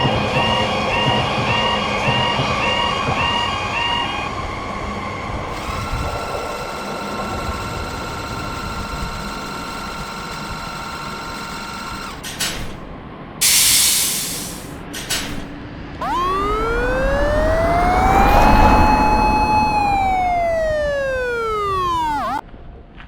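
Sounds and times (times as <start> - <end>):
electric train motor whine: 0.0 - 12.2, 16.0 - 22.4
short burst of hiss: 13.4 - 14.7
clicks: 16.0 - 22.4
steady tone: 16.0 - 22.4.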